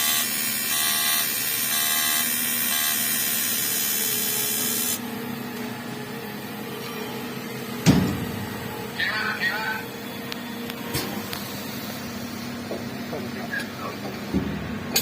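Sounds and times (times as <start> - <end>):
welding arc hissing and buzzing: 0.0 - 5.1
low machine hum: 5.0 - 15.0.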